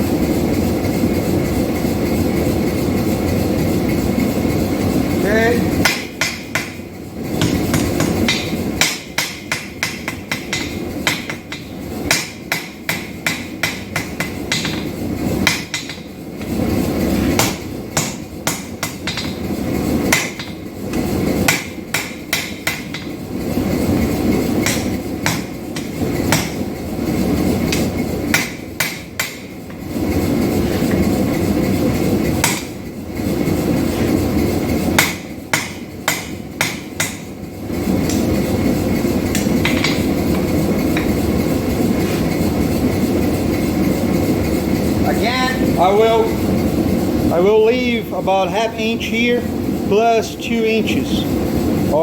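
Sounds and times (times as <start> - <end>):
hammer striking hot steel: 5.5 - 43.6.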